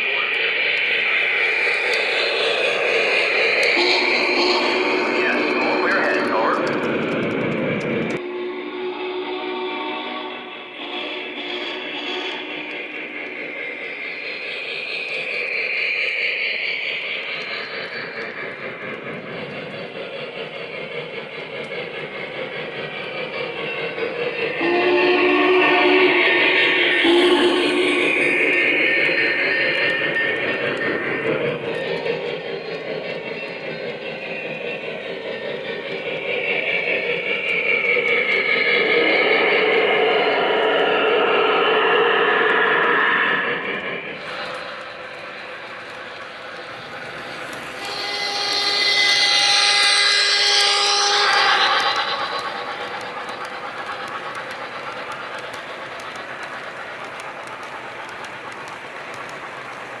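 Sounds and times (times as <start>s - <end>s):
model train rumbling on track: 0.0s - 60.0s
wheels clicking over rail joints: 44.2s - 60.0s.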